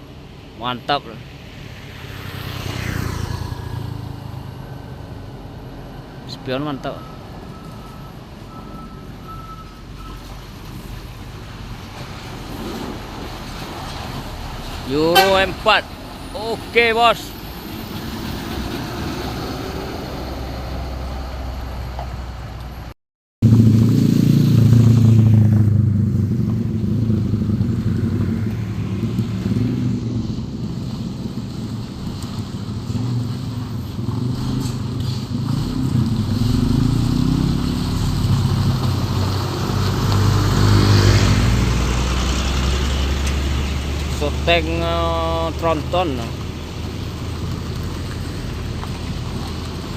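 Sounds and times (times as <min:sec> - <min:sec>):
road traffic noise: 0:00.0 - 0:49.9
truck diesel engine drone: 0:00.0 - 0:49.9.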